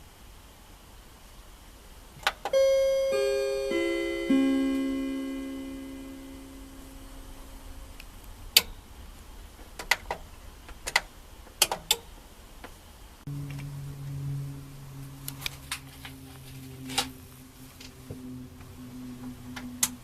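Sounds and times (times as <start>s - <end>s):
amplifier chime note ringing: 2.5s - 8.0s
low hum: 2.5s - 11.5s, 12.2s - 20.0s.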